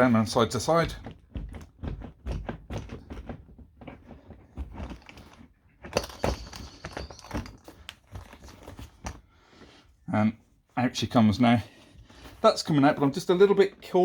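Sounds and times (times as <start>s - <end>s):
headrest knocking and rattling: 0.0s - 9.2s.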